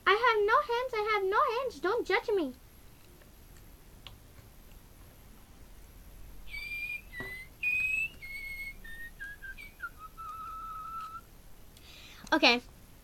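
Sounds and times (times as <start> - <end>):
person whistling notes: 6.5 - 11.3.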